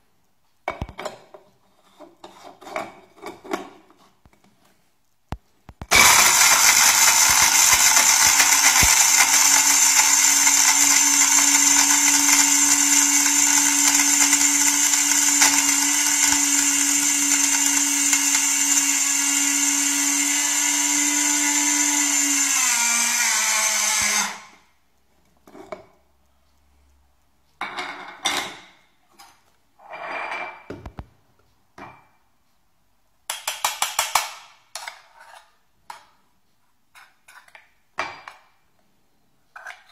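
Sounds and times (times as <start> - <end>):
electric coffee grinder whirring: 5.9 - 24.6.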